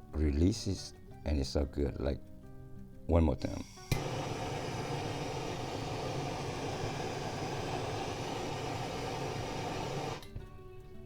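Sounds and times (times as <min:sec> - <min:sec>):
torch flame roar: 0:04.0 - 0:10.2.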